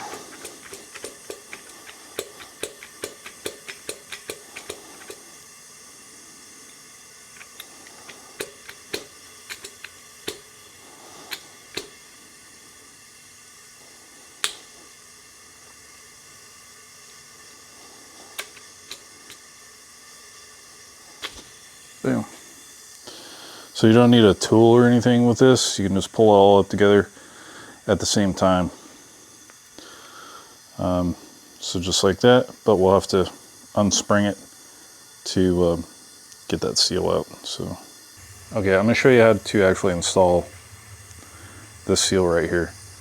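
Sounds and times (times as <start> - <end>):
sharp metallic clicks: 0.0 - 5.2, 7.4 - 10.5, 11.3 - 12.0.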